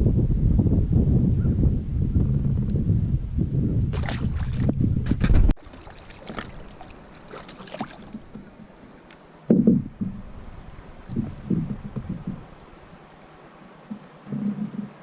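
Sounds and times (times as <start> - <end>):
paddle splashing and dripping: 3.9 - 4.7, 5.6 - 15.0
low knock against hull: 9.5 - 10.4, 11.1 - 12.5
heavy low rumble: 9.5 - 13.0.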